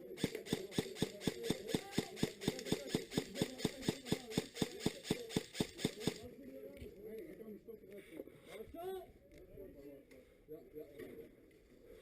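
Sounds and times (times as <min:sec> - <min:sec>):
sharp clicks: 0:00.0 - 0:06.2.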